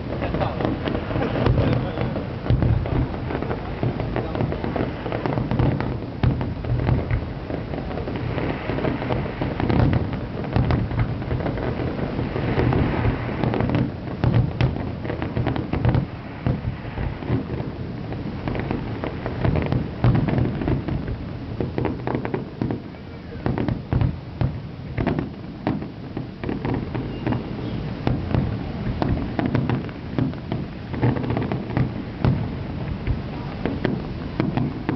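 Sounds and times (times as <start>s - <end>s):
fireworks booming and crackling: 0.0s - 34.9s
low rolling rumble: 0.0s - 34.9s.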